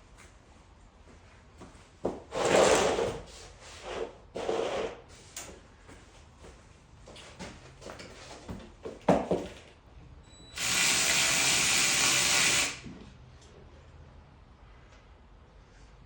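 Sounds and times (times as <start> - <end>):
power tool drilling: 10.6 - 12.8.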